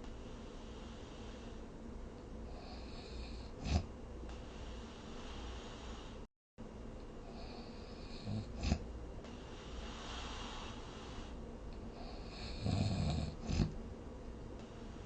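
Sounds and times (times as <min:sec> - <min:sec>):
steady background hiss: 0:00.0 - 0:15.0
person snoring: 0:02.5 - 0:03.9, 0:07.3 - 0:08.9, 0:09.6 - 0:13.8.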